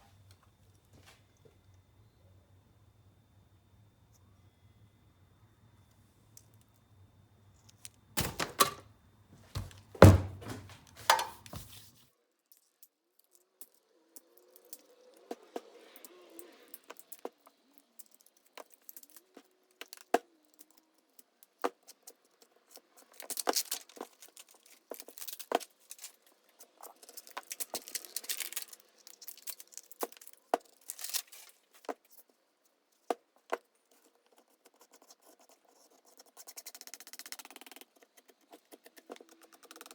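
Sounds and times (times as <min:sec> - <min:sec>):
scraping and rustling: 0:09.5 - 0:12.0.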